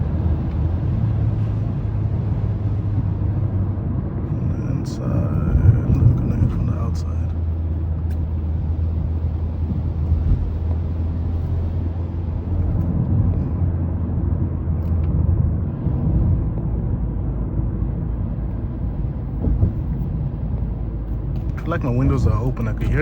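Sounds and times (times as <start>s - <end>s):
wind noise: 0.0s - 23.0s
tyre rumble on wet road: 5.4s - 23.0s.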